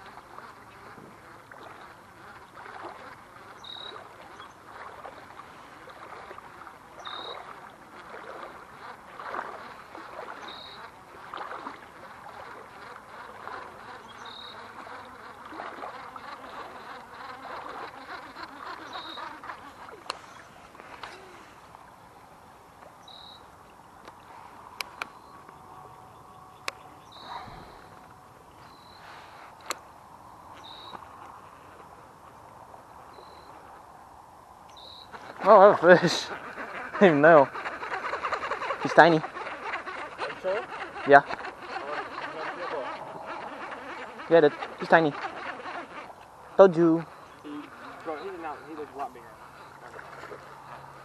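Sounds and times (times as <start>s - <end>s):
rustling outdoor background: 0.0s - 51.0s
bird short high call: 26.1s - 29.3s.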